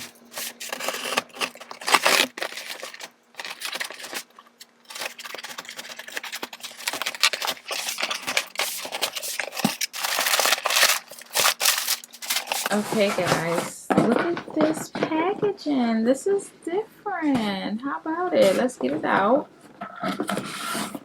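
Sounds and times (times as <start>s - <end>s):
paper packaging rustling and tearing: 0.0s - 13.8s.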